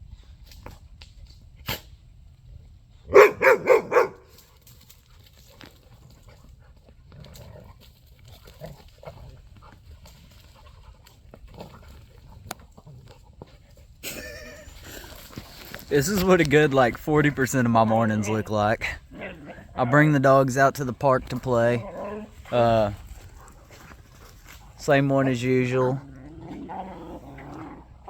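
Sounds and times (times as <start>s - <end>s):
dog barking: 3.1s - 4.3s.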